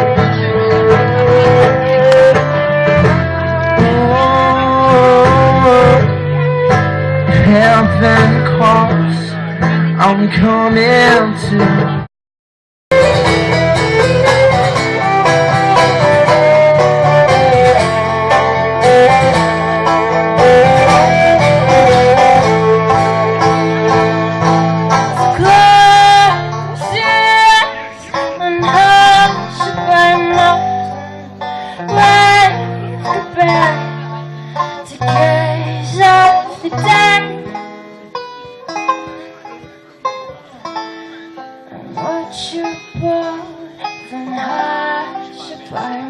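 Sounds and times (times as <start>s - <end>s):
guitar music with bass line: 0.0s - 12.1s, 12.9s - 46.0s.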